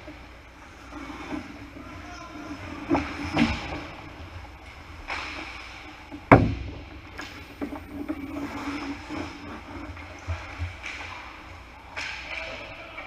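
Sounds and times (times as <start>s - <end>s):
small knocks: 6.1s - 8.3s.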